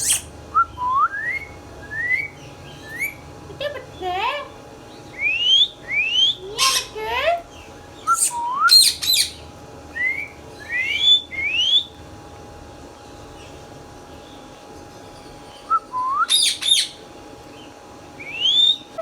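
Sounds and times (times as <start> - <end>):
parakeet whistling and chirping: 0.0 - 3.2, 5.0 - 7.0, 8.0 - 12.0, 15.5 - 17.0, 18.2 - 19.0.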